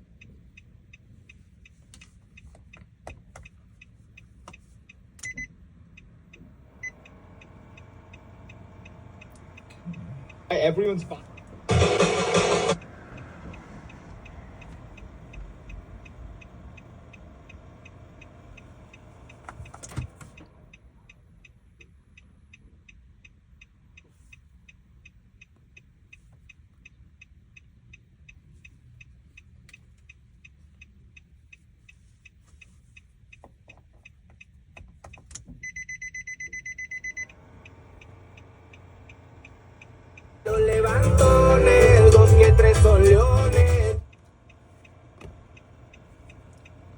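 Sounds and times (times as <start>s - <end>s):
car indicator relay ticking: 0.0s - 46.9s
rapid electronic beeping: 9.8s - 12.8s.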